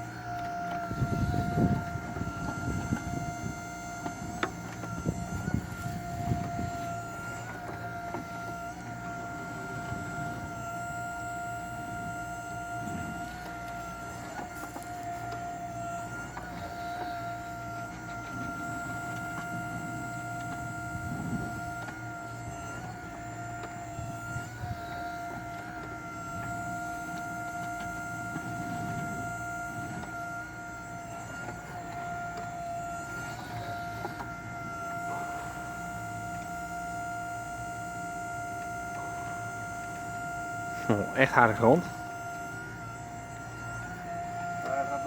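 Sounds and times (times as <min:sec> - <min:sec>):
high hydraulic pump whine: 0:00.0 - 0:45.0
low hydraulic rumble: 0:00.0 - 0:45.0.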